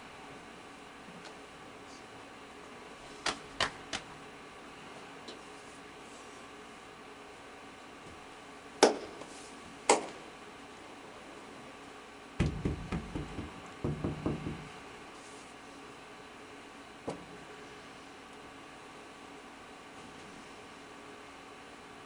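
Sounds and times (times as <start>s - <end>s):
dull deep thumps: 12.4s - 14.7s
sharp knocks: 12.4s - 14.7s.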